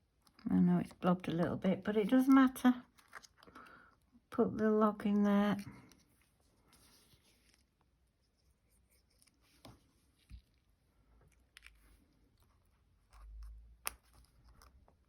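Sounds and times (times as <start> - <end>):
paper card rustling: 5.6 - 10.8.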